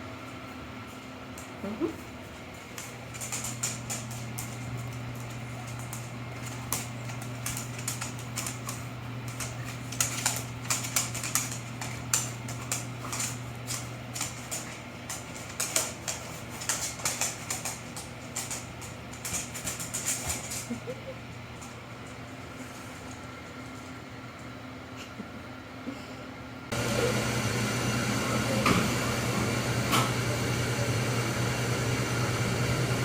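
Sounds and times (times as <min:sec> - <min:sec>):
steady low hum: 0:00.0 - 0:33.0
light clicking and tapping: 0:02.7 - 0:20.8.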